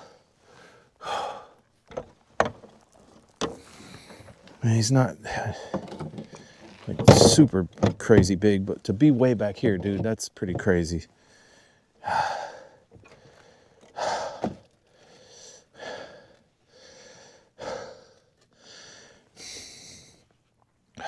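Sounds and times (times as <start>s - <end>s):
man breathing heavily: 0.0s - 1.7s, 3.5s - 4.4s, 11.1s - 20.3s.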